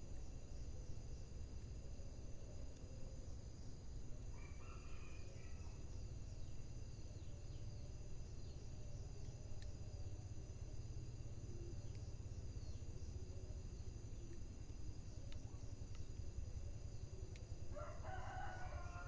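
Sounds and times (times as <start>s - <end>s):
rooster crowing: 4.4s - 5.6s, 17.7s - 19.0s
wood fire rumbling and crackling: 5.7s - 19.0s.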